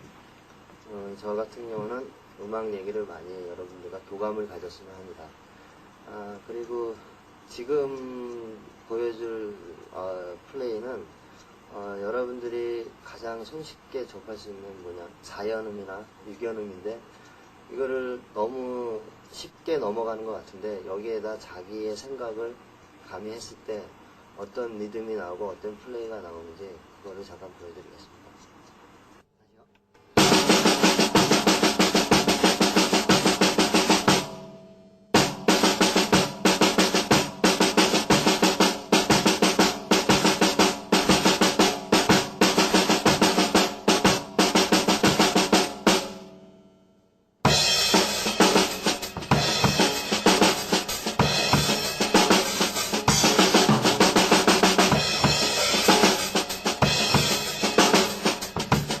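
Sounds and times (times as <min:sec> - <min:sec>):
drum kit fast runs: 0:30.2 - 0:34.6, 0:35.2 - 0:46.4, 0:47.5 - 0:59.0
cymbal wash: 0:30.2 - 0:59.0.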